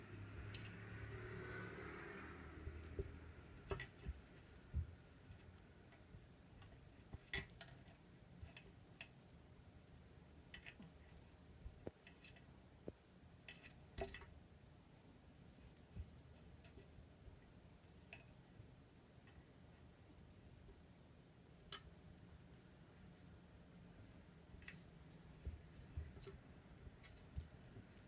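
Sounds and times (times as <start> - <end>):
small metallic jingles: 0.4 - 1.1, 2.7 - 12.8, 26.1 - 28.0.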